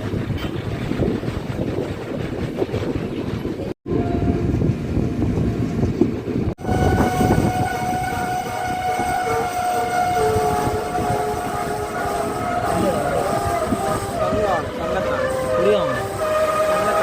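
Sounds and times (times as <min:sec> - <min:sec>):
train wheels rumbling: 0:00.0 - 0:17.0
train horn long note: 0:03.9 - 0:04.5, 0:06.6 - 0:17.0.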